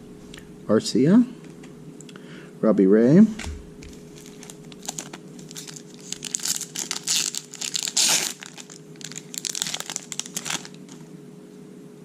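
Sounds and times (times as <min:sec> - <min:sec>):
foil wrapper crinkling and tearing: 0:03.9 - 0:11.1.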